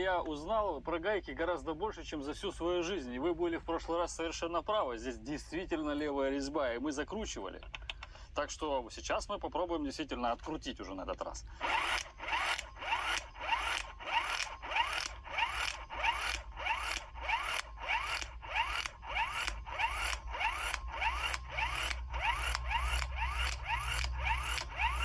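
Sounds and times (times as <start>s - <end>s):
impact wrench hammering: 11.6s - 25.0s.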